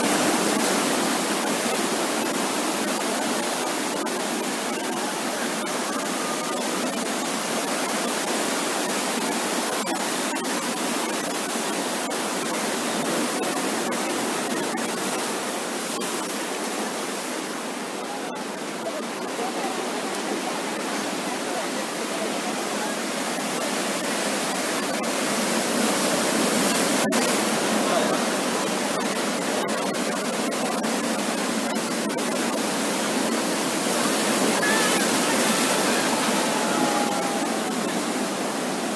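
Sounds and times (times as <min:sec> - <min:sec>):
surf breaking on sandy beach: 0:19.3 - 0:38.9.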